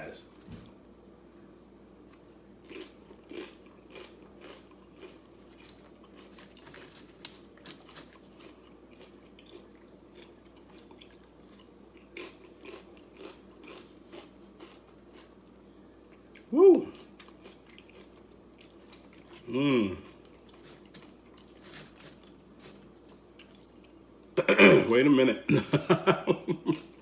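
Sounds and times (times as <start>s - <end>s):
person crunching tortilla chips: 2.1s - 15.3s, 16.2s - 24.0s.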